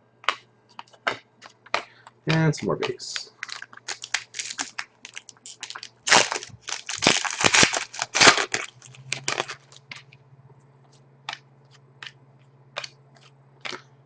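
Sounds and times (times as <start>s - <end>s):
faint low hum: 0.0s - 14.0s
card wrappers crinkling: 1.7s - 10.1s.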